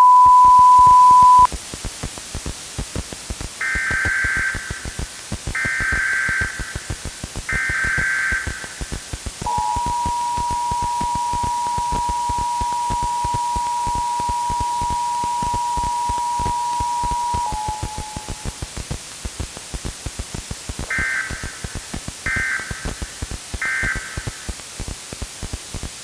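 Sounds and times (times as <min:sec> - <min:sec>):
digital data tones: 0:00.0 - 0:01.5, 0:09.5 - 0:18.6
two steady alert tones: 0:00.0 - 0:01.5, 0:09.5 - 0:18.7
crackling static: 0:00.0 - 0:26.0.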